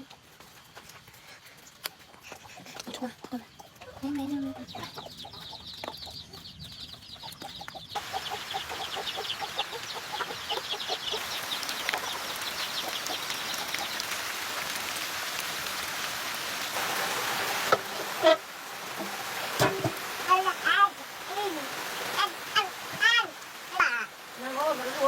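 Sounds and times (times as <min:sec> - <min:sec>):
chickens clucking: 0:00.0 - 0:15.0, 0:16.7 - 0:20.6
chicks peeping: 0:00.0 - 0:15.0
rain rushing: 0:00.0 - 0:25.0.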